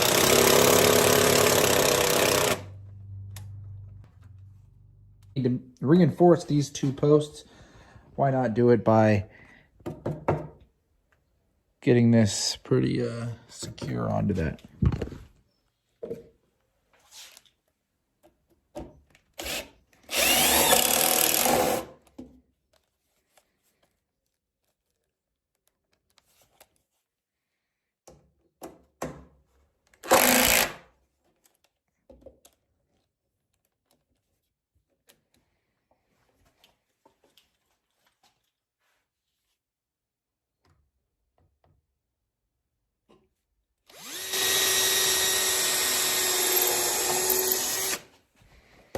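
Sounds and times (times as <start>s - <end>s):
power drill driving screws: 0.0s - 2.7s, 19.4s - 22.0s, 30.0s - 30.8s, 43.9s - 48.1s.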